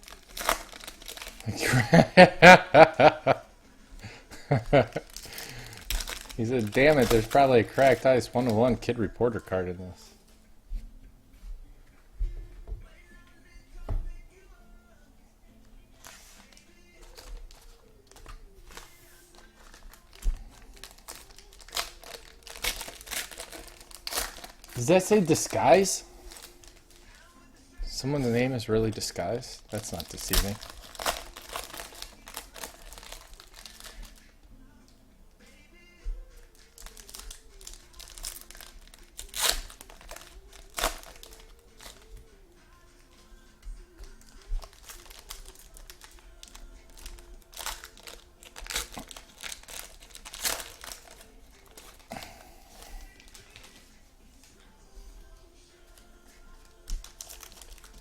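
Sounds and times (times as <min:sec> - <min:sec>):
loud wrapper rips: 0:00.0 - 0:02.0, 0:04.6 - 0:08.6, 0:16.0 - 0:27.1, 0:29.7 - 0:34.3, 0:36.6 - 0:42.1, 0:44.0 - 0:53.8, 0:56.6 - 0:58.0
wrappers crinkling and tearing: 0:00.0 - 0:03.4, 0:04.0 - 0:09.5, 0:16.0 - 0:27.3, 0:27.9 - 0:34.4, 0:36.4 - 0:42.4, 0:43.3 - 0:53.9, 0:55.8 - 0:58.0.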